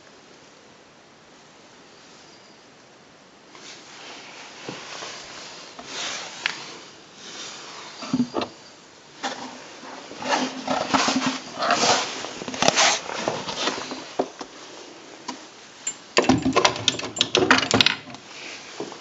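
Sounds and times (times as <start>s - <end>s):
manual typewriter clacking: 15.9s - 18.2s.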